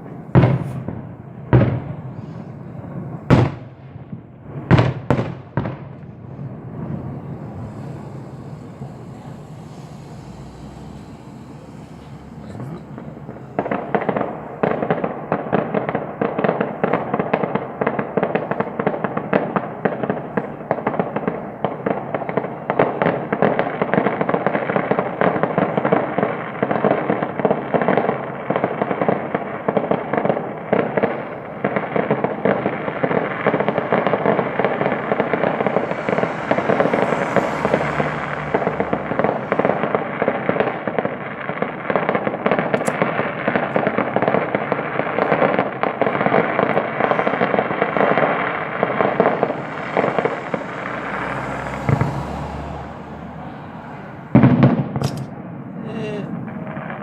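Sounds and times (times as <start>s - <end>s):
fireworks and firecrackers bangs: 0.0s - 57.0s.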